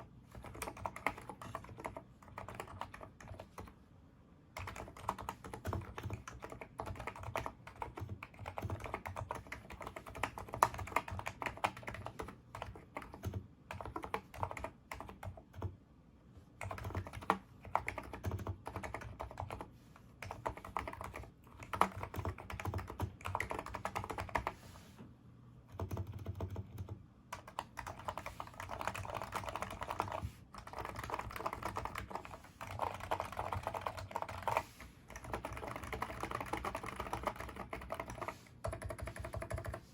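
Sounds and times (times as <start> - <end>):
keyboard typing: 0.3 - 3.8, 4.6 - 15.7, 16.6 - 24.6, 25.7 - 39.9.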